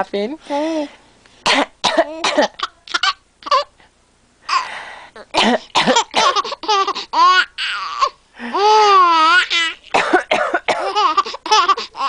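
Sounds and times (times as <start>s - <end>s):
woman coughing: 1.4s - 2.8s, 5.3s - 6.6s, 9.9s - 11.2s
baby laughing: 2.1s - 3.7s, 5.2s - 9.9s, 10.8s - 12.0s.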